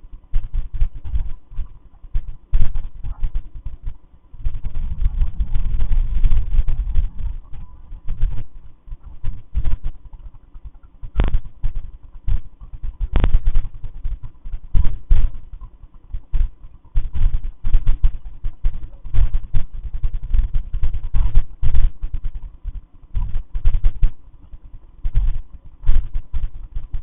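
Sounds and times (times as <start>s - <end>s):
heavy low thumps and knocks: 2.6s - 10.0s.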